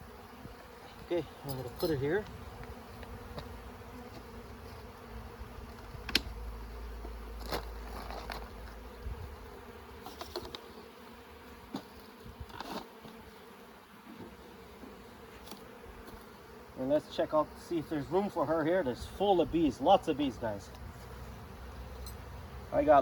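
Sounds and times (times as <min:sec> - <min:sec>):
honeybees buzzing: 0:00.0 - 0:23.0.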